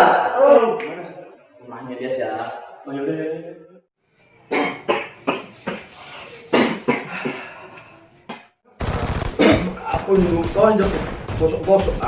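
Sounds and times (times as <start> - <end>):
person coughing: 4.5 - 5.9, 6.5 - 7.6, 9.4 - 9.8.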